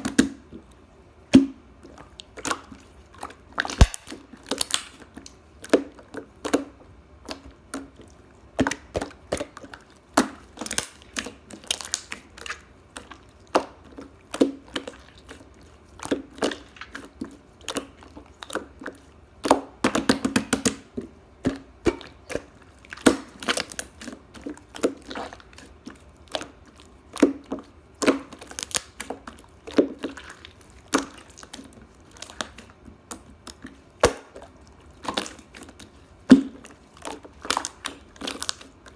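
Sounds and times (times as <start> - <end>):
crunching and crackling: 2.1 - 5.4, 21.9 - 38.9.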